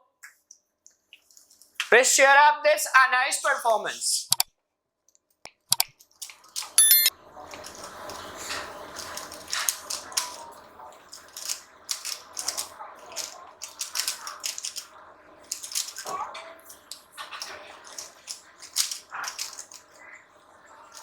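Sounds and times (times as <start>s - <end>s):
puzzle cubes clicking: 6.8s - 7.1s.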